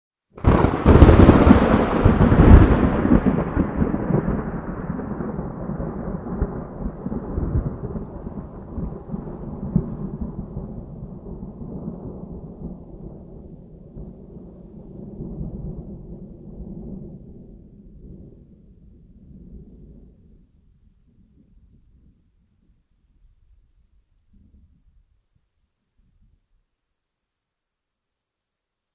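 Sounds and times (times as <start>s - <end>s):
thunderclap: 0.4s - 20.4s
thunder rumbling: 0.4s - 22.3s.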